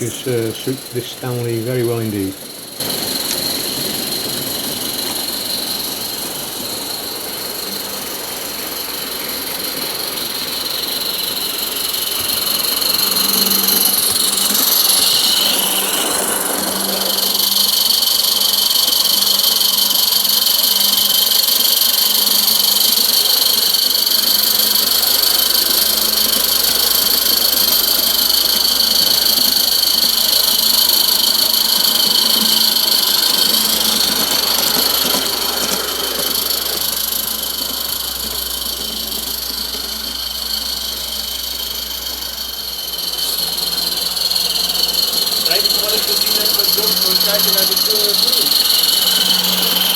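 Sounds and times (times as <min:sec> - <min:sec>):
high-pitched whine: 0:00.0 - 0:49.9
model steam locomotive chuffing: 0:00.0 - 0:49.9.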